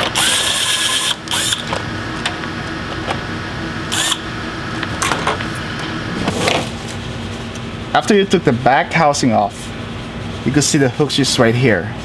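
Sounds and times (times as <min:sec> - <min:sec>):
screwdriver scraping: 0:04.0 - 0:04.2.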